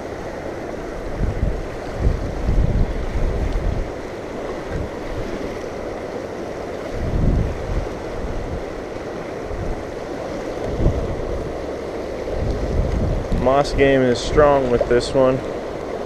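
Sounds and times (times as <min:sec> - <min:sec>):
river current rushing: 0:00.0 - 0:16.0
wind buffeting microphone: 0:00.8 - 0:06.0, 0:06.8 - 0:16.0
low rumbling surges: 0:06.6 - 0:16.0.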